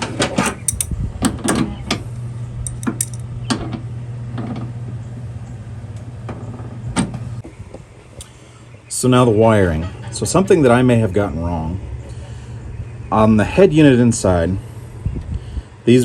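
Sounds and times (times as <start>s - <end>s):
low mechanical hum: 0.0s - 16.0s
metallic clicks of fittings: 0.6s - 0.9s, 2.6s - 3.2s.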